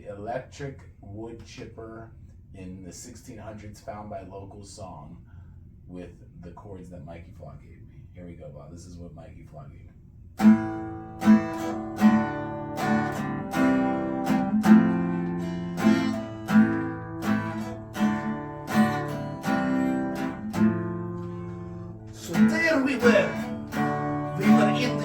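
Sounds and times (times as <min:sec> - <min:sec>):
acoustic guitar strumming: 0:10.4 - 0:25.0.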